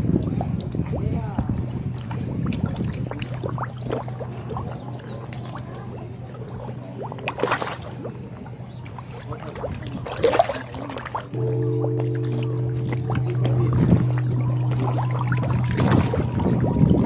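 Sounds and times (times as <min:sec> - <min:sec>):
fish splashing and slurping water: 0:00.0 - 0:17.0
loud splashes: 0:07.0 - 0:08.1, 0:09.1 - 0:17.0.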